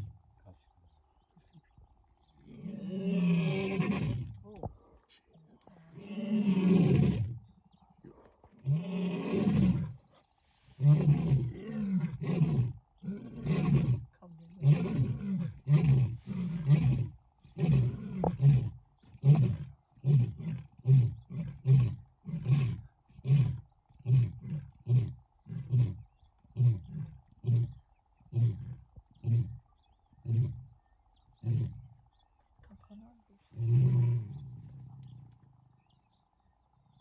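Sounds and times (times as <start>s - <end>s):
lion roaring: 2.4s - 4.4s, 5.9s - 7.4s, 8.1s - 10.1s, 10.7s - 29.6s, 30.2s - 30.8s, 31.4s - 32.0s, 33.5s - 35.4s.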